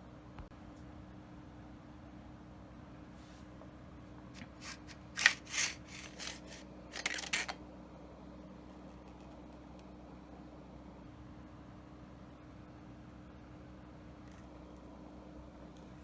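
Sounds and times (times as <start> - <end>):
gun parts clicking and rattling: 4.4 - 7.6.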